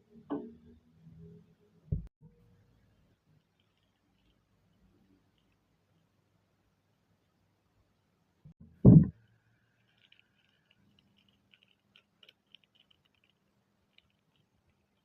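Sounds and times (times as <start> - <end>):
faint ticks and crackles: 2.5 - 6.2, 9.1 - 15.0.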